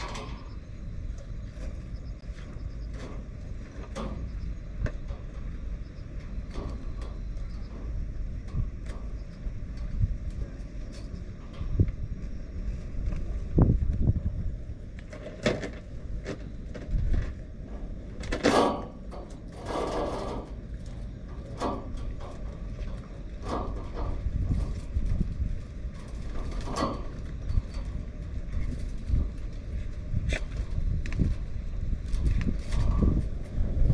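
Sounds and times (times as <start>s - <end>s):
sharp knocks and rattles: 0.0s - 12.0s, 15.0s - 31.5s
wind buffeting microphone: 0.0s - 33.9s
rushing wind gust: 7.4s - 15.0s, 27.4s - 33.9s.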